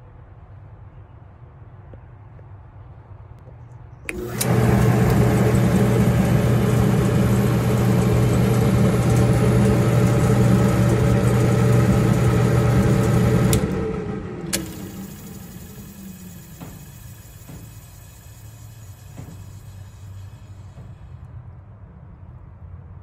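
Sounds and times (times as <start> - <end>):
dryer motor humming: 4.1 - 21.2.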